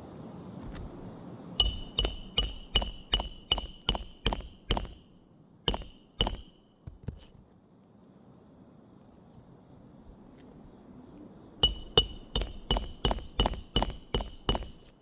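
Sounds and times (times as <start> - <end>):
hammer striking nail: 1.6 - 5.1, 5.7 - 7.1, 11.6 - 15.0.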